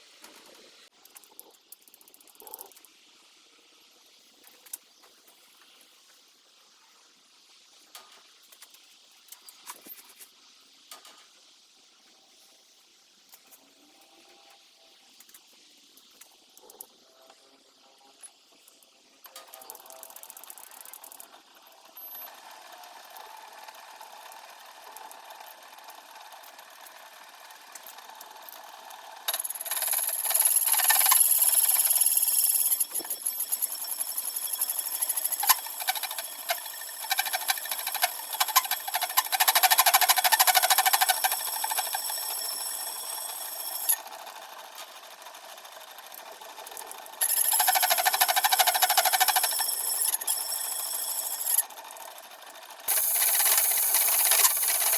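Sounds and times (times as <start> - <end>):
workshop machine running: 21.6 - 44.8, 46.0 - 52.2, 52.8 - 54.9
scratchy metal cutting: 29.3 - 44.0, 47.2 - 51.6, 52.9 - 54.9.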